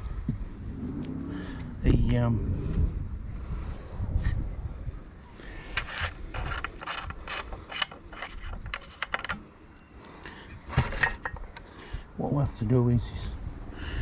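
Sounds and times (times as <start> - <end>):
small mechanical parts clicking: 5.7 - 9.4.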